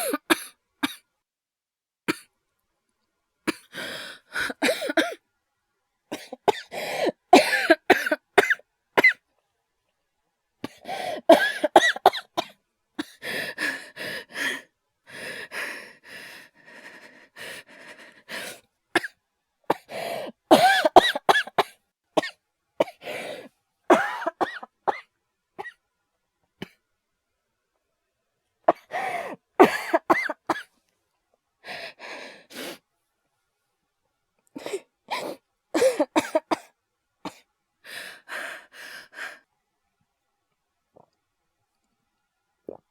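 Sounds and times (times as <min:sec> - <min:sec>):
person coughing harshly: 0:00.0 - 0:01.0, 0:04.4 - 0:05.2, 0:06.1 - 0:09.2, 0:11.1 - 0:13.2, 0:20.5 - 0:23.0, 0:23.9 - 0:25.8, 0:28.7 - 0:30.7, 0:35.2 - 0:36.7
wheezing breaths: 0:03.7 - 0:04.9, 0:10.7 - 0:11.3, 0:13.0 - 0:18.6, 0:28.8 - 0:29.4, 0:37.8 - 0:39.4.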